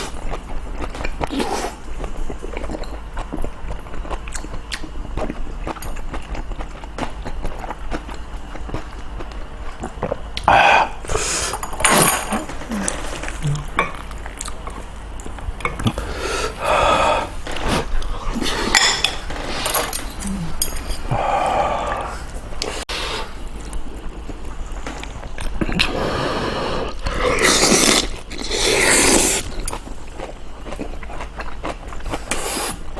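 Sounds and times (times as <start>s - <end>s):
spoon and dishes clinking: 11.5s - 12.6s, 18.7s - 21.1s.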